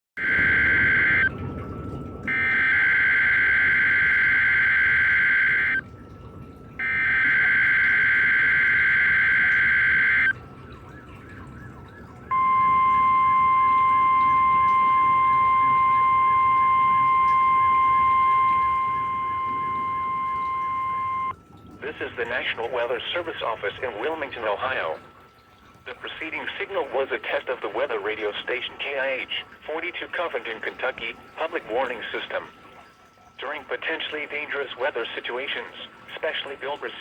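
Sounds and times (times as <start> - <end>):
screechy digital data bursts: 0.2 - 1.3, 2.3 - 5.8, 6.8 - 10.3, 12.3 - 21.3
steady warning alarm tone: 0.2 - 37.0.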